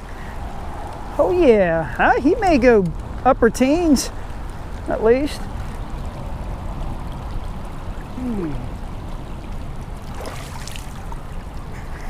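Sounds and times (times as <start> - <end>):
heavy rain: 0.0 - 12.0
faint splashes: 4.1 - 12.0.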